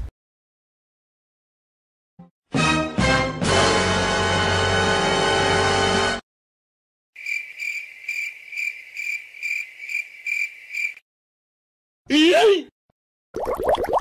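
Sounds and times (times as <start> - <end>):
cricket chirping: 7.2 - 11.0.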